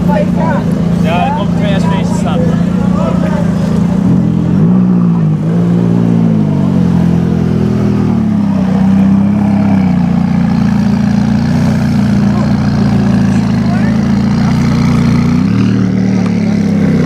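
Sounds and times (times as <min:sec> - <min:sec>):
car engine revving at low revs: 0:00.0 - 0:17.0.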